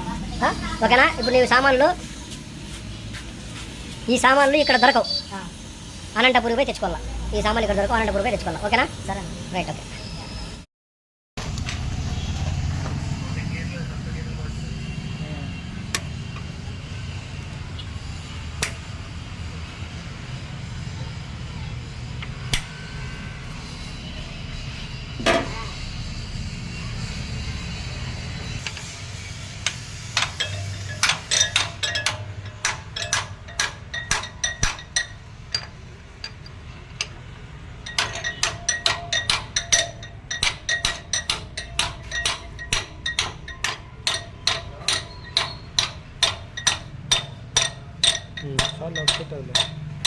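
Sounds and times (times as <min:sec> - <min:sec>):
hammer striking metal: 0:28.6 - 0:50.0.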